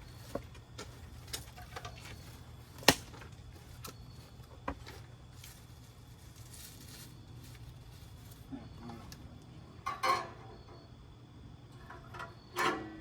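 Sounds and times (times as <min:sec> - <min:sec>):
clicks and knocks of grill parts: 0:00.2 - 0:04.0, 0:09.8 - 0:10.5, 0:11.8 - 0:13.0.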